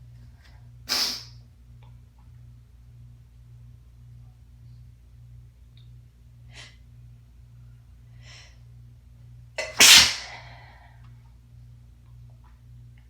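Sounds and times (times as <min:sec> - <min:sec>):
woman sneezing: 0:09.8 - 0:10.4.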